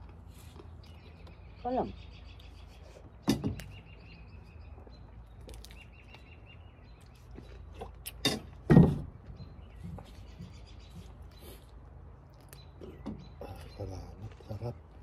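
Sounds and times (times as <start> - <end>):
birds chirping: 0.0 - 15.0
sharp knocks: 8.3 - 9.2.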